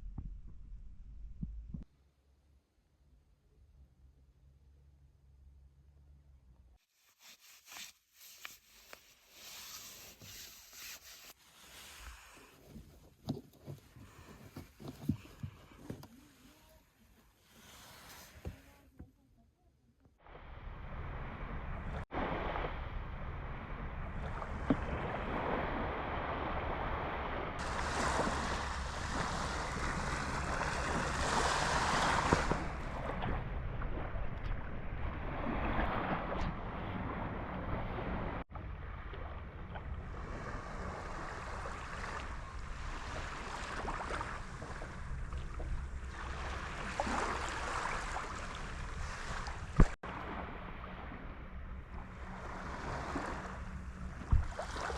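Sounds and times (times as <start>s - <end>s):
sea waves washing onto shore: 20.5s - 33.5s, 40.0s - 51.0s.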